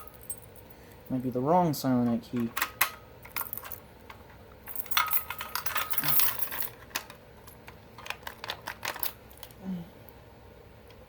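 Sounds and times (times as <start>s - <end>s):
metal keys jangling in a lock: 0.0s - 1.3s, 2.3s - 3.8s, 4.6s - 9.6s.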